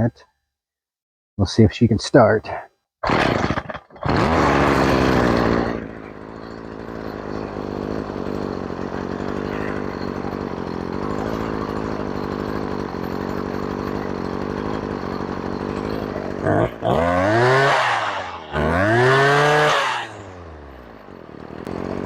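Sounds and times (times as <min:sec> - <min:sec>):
string trimmer engine running: 0:03.0 - 0:22.0.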